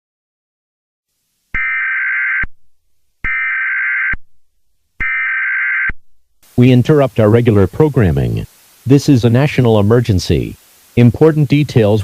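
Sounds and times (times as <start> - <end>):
shrill digital data tones: 1.6 - 2.5, 3.3 - 4.2, 5.0 - 6.0.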